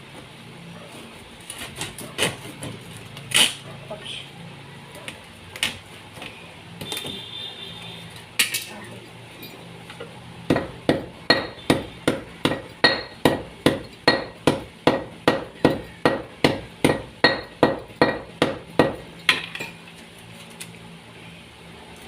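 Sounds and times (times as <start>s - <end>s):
hammer striking metal: 10.5s - 19.8s.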